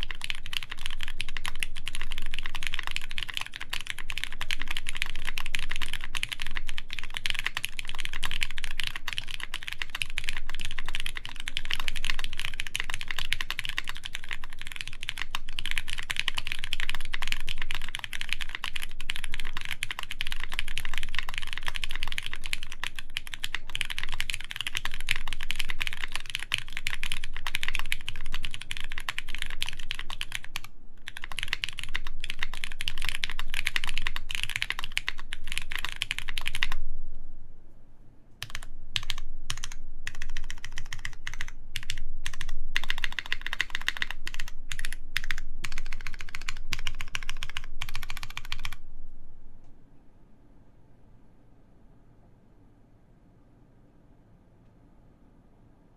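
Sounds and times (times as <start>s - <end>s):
mechanical keyboard typing: 0.0s - 36.8s, 38.4s - 48.8s.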